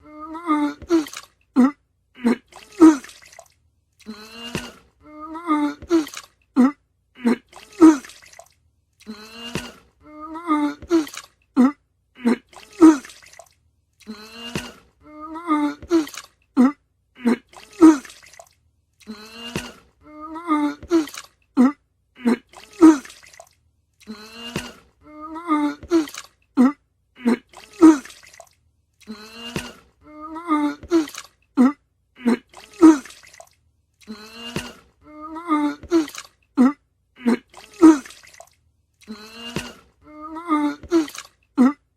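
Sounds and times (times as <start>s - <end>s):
person retching and vomiting: 0.0s - 3.4s, 4.0s - 8.4s, 9.0s - 13.4s, 14.0s - 18.4s, 19.0s - 23.4s, 24.0s - 28.4s, 29.0s - 33.4s, 34.0s - 41.9s
wet splashing: 0.6s - 1.4s, 2.3s - 4.9s, 5.6s - 6.4s, 7.3s - 9.9s, 10.6s - 11.4s, 12.3s - 14.9s, 15.5s - 16.4s, 17.3s - 19.9s, 20.6s - 21.4s, 22.3s - 24.9s, 25.5s - 26.4s, 27.4s - 31.5s, 32.3s - 36.5s, 37.4s - 41.5s.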